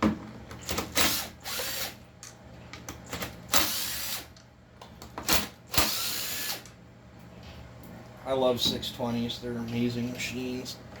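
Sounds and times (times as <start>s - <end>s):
power drill-driver whirring: 0.7s - 2.0s, 3.5s - 4.3s, 5.7s - 6.7s.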